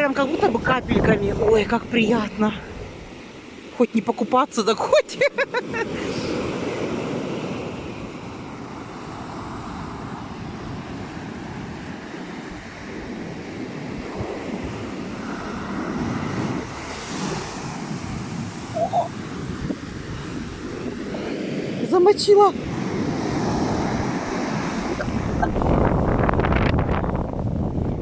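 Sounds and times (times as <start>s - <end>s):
wind buffeting microphone: 0.0s - 4.3s, 4.9s - 28.0s
sea surf breaking: 0.0s - 28.0s.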